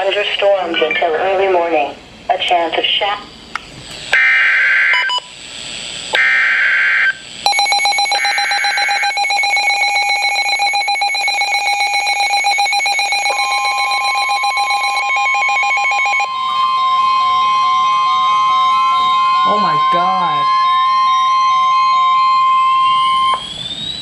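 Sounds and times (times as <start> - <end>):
steady warning alarm tone: 4.1 - 5.4, 6.2 - 24.0
pulsing electronic alert: 7.5 - 24.0
buzzy data bursts: 13.5 - 22.2.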